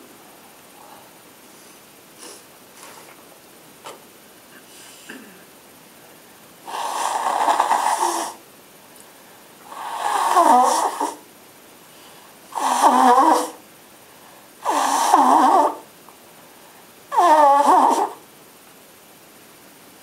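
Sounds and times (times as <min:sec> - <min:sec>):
person blowing nose: 0:02.2 - 0:03.0, 0:06.7 - 0:08.4, 0:09.7 - 0:11.2, 0:12.5 - 0:13.6, 0:14.6 - 0:15.8, 0:17.1 - 0:18.2.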